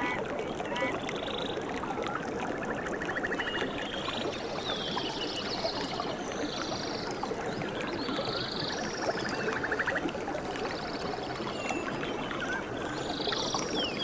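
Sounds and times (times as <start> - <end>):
stream water flowing and splashing: 0.0 - 14.0
bird chirps and trills: 3.4 - 14.0.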